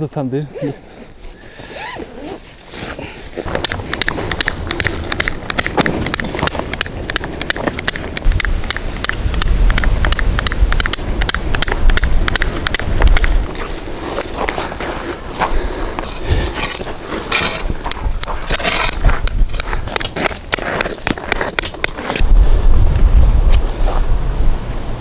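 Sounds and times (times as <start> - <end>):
wind buffeting microphone: 3.4 - 25.0
heavy low rumble: 3.6 - 14.6.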